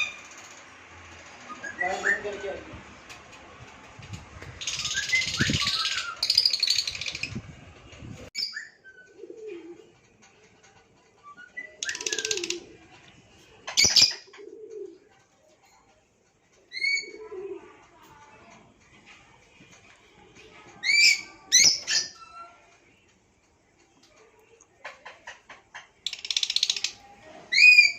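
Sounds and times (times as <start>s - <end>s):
lovebirds screeching: 4.6s - 7.4s, 11.4s - 12.6s
low cooing calls: 11.3s - 12.9s.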